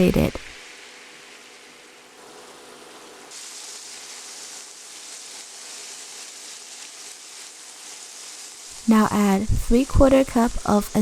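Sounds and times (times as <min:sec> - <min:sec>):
wine sizzling in a hot pan: 0:00.1 - 0:11.0.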